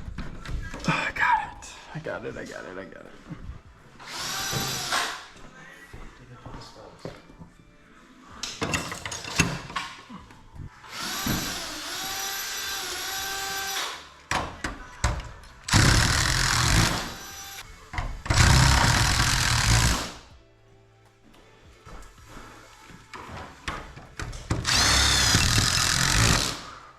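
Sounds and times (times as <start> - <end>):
cordless drill whining: 24.6 - 26.7.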